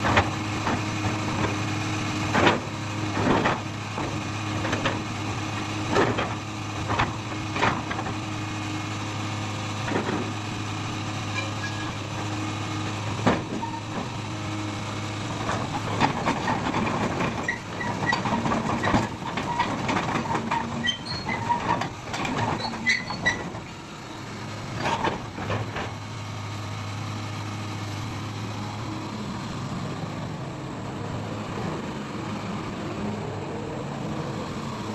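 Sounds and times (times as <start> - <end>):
excavator diesel engine running: 0.0 - 34.9
short high squeaks: 11.3 - 12.0, 20.5 - 21.7, 22.5 - 23.5
machine clanks and knocks: 15.5 - 23.7.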